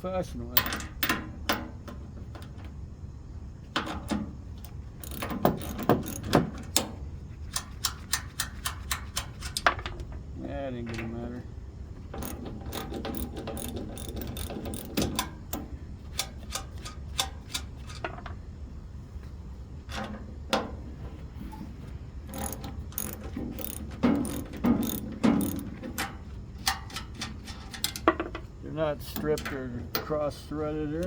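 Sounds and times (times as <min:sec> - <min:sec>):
ratchet wrench clicking: 0:04.6 - 0:06.9, 0:12.2 - 0:18.0, 0:22.3 - 0:25.7
metal clinks: 0:22.3 - 0:25.7.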